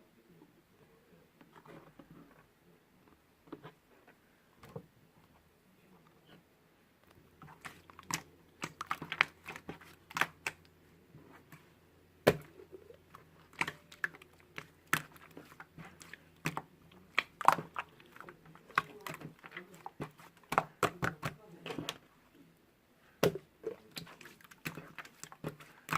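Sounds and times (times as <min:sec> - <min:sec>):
faint low hum: 0:00.0 - 0:25.9.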